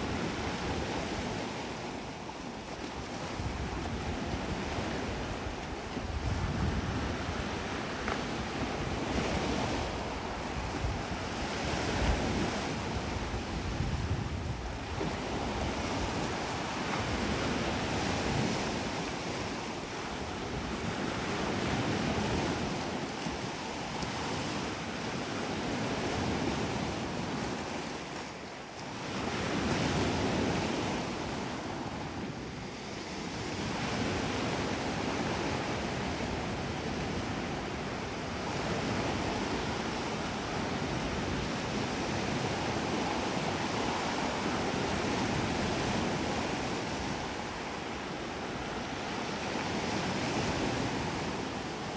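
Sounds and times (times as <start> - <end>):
wind buffeting microphone: 0.0 - 28.2, 28.9 - 51.9
sea waves breaking on beach: 0.0 - 51.9.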